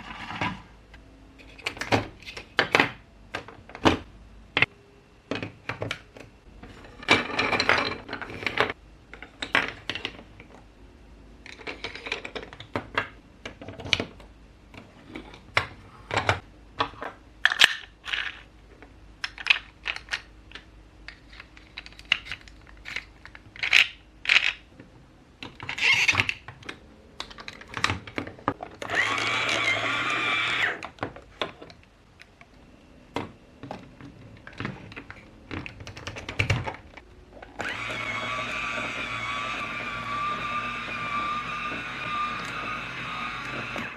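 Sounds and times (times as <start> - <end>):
plastic building blocks clicking: 19.2 - 24.7, 34.0 - 37.0.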